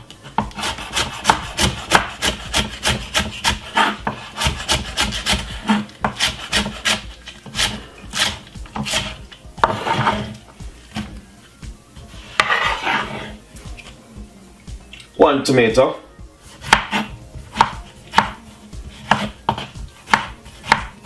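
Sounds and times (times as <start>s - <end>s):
knife chopping on a board: 0.2s - 10.3s, 12.3s - 13.3s, 16.5s - 21.0s
knife scraping across a board: 0.2s - 11.2s, 12.1s - 14.0s, 16.4s - 20.9s.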